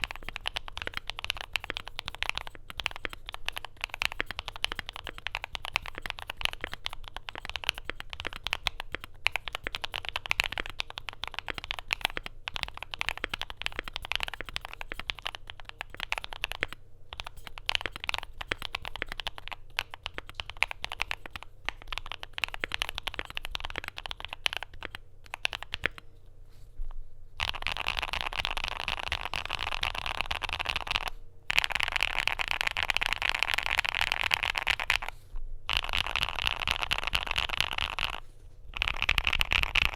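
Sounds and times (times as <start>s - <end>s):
mechanical keyboard typing: 0.0s - 26.0s, 27.4s - 38.2s, 38.8s - 39.9s.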